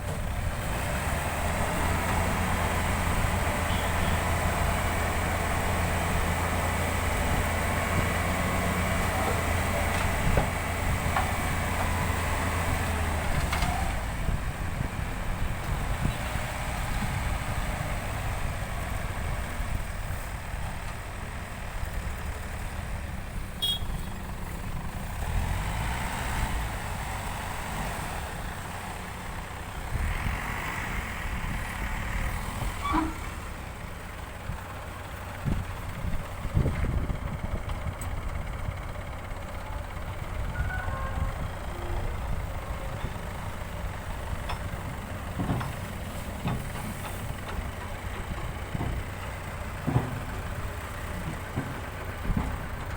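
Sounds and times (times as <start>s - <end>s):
diesel engine under load: 0.0s - 52.9s.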